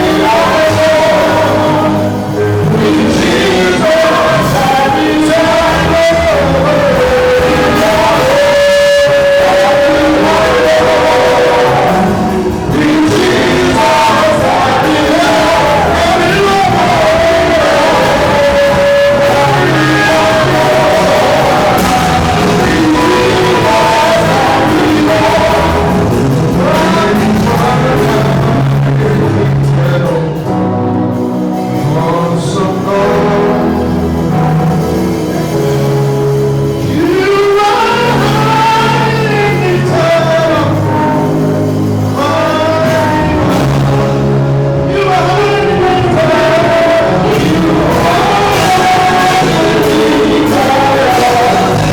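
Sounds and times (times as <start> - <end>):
people singing: 0.0 - 51.9
worship band playing: 0.0 - 51.9.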